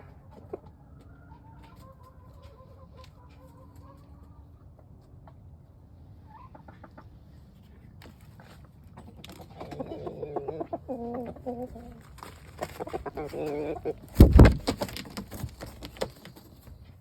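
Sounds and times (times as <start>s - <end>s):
chickens clucking: 0.0s - 17.0s
loud short thump: 14.2s - 14.9s.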